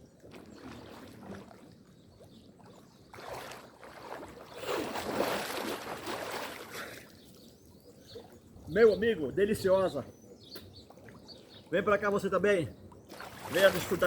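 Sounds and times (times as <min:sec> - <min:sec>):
water splashing in a stream: 0:00.0 - 0:07.4, 0:13.0 - 0:14.0.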